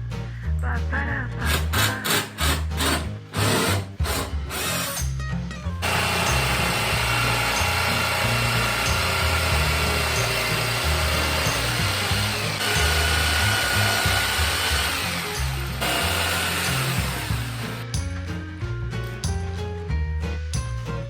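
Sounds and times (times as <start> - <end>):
background music with bass line: 0.0 - 21.0
power tool whining under load: 5.8 - 17.8.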